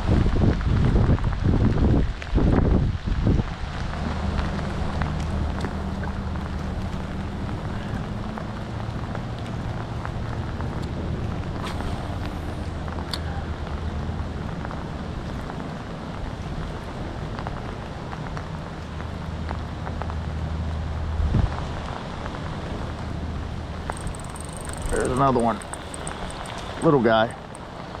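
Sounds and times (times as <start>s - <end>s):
rain falling on river: 0.0s - 28.0s
low steady hum: 3.6s - 15.5s.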